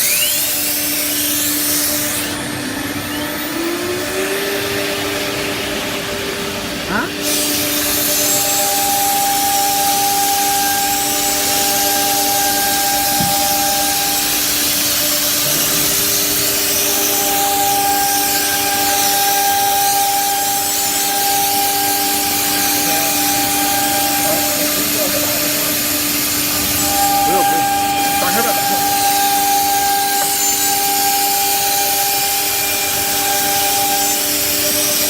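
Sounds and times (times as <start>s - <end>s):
hiss of cutting and dust extraction: 0.0s - 35.0s
router spindle whine: 0.0s - 35.0s.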